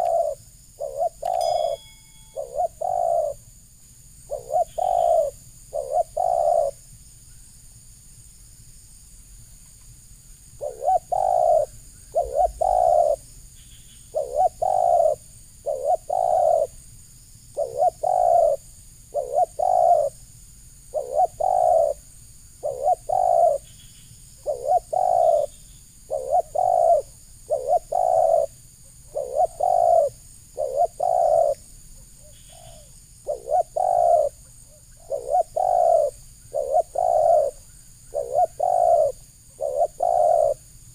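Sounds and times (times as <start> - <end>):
dove cooing: 0.0 - 3.5, 4.3 - 6.8, 10.6 - 13.2, 14.1 - 16.8, 17.5 - 20.2, 20.9 - 22.0, 22.6 - 23.7, 24.4 - 31.6, 32.2 - 40.6.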